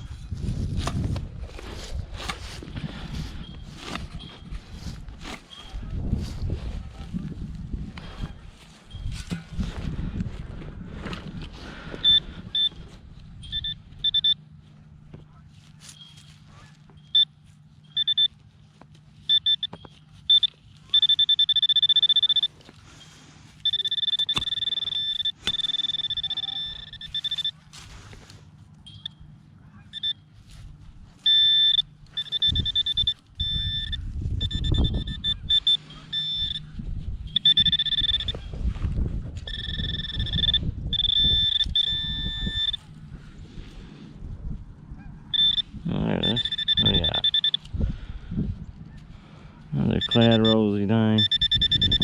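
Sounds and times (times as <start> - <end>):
soil digging and scraping: 0.0 - 14.2, 14.9 - 48.1
metal detector beeping: 1.6 - 6.7, 11.1 - 14.5, 15.8 - 43.3, 45.3 - 48.1, 49.7 - 52.0.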